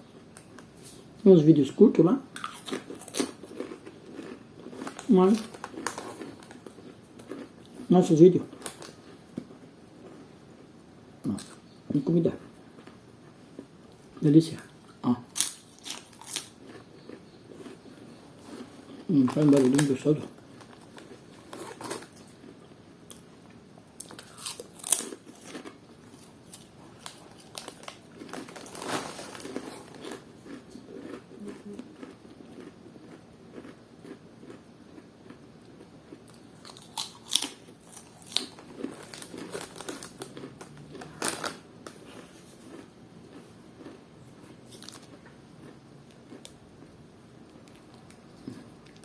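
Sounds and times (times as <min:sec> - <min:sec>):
chewing crunchy snack: 0:02.3 - 0:10.3, 0:12.8 - 0:23.3, 0:24.0 - 0:49.0
snack packet crinkling: 0:02.4 - 0:07.8, 0:08.5 - 0:09.2, 0:15.3 - 0:23.2, 0:24.0 - 0:31.2, 0:36.3 - 0:42.9, 0:44.7 - 0:45.3.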